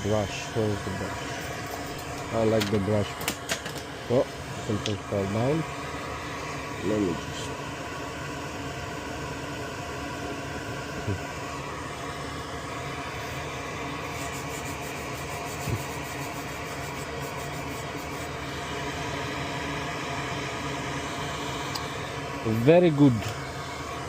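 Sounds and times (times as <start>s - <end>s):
small electric fan running: 0.0s - 24.0s
faint rapid scratching: 14.0s - 18.3s.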